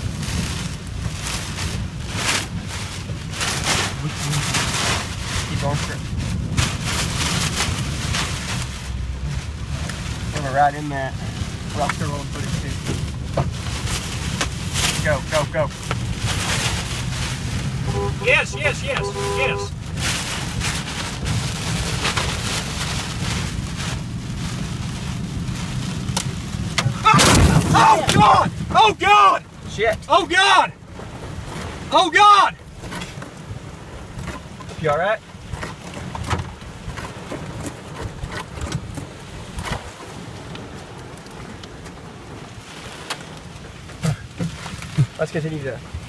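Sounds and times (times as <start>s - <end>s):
wind buffeting microphone: 0.0s - 30.1s
heavy rain hiss: 0.0s - 32.6s, 40.2s - 46.0s
debris knocking: 26.8s - 28.8s.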